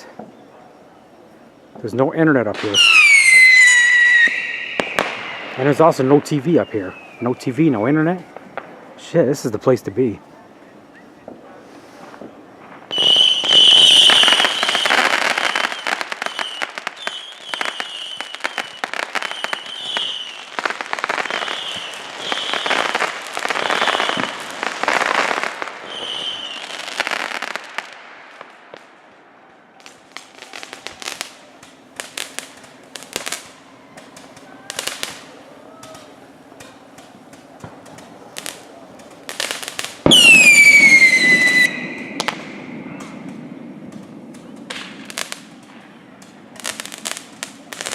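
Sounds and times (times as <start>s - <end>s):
fireworks crackling and popping: 0.0s - 47.9s
firework bangs: 1.7s - 9.2s, 11.1s - 47.9s
firework whistle falling in pitch: 2.8s - 5.5s, 12.9s - 20.4s, 23.6s - 24.4s, 40.1s - 43.3s.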